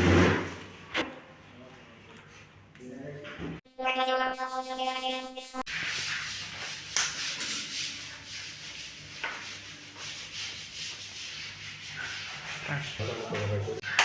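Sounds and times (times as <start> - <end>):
hands rubbing and scraping fitting: 5.7 - 13.9.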